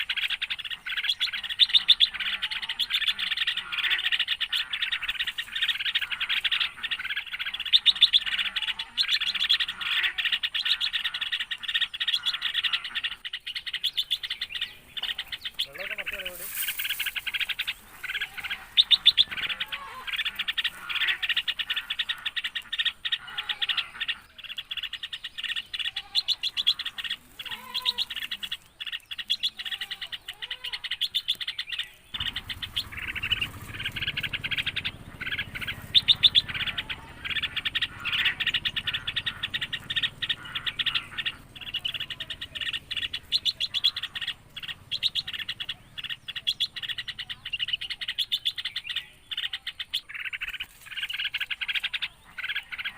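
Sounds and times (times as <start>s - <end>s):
birds twittering: 0.0s - 52.9s
slower lower bird calls: 0.0s - 52.9s
low rumble: 32.2s - 47.3s.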